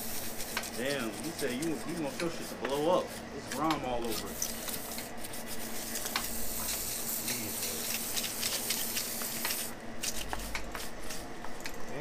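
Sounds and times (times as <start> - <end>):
aerosol spray hissing: 6.0 - 9.7.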